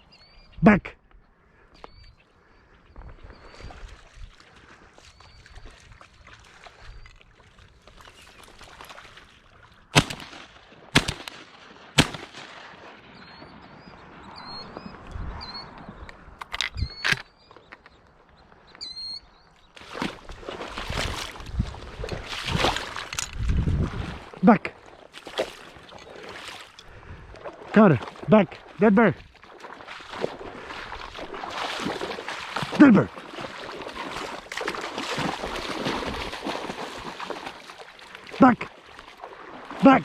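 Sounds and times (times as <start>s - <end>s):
shotgun blasts: 10.0s - 13.2s.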